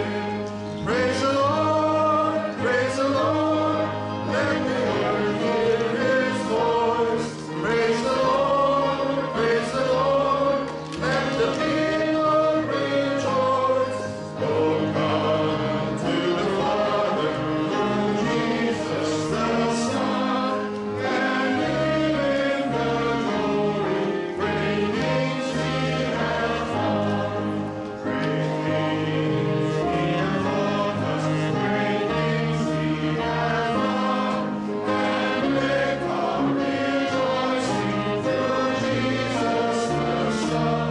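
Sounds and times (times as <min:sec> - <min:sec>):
choir singing held chords: 0:00.0 - 0:40.9.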